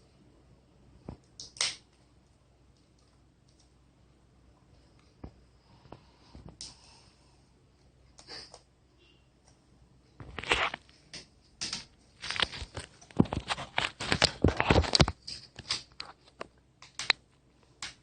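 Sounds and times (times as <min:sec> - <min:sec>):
hands clicking and scraping on laptop: 0:10.2 - 0:18.0.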